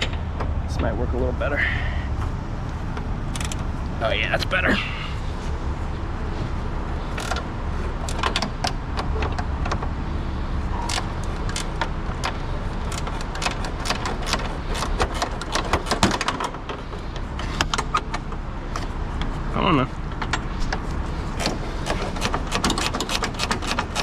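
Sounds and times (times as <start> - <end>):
steady low hum: 0.0 - 24.0
ratchet wrench clicking: 3.3 - 3.6, 7.1 - 7.4, 10.8 - 16.4, 21.3 - 24.0.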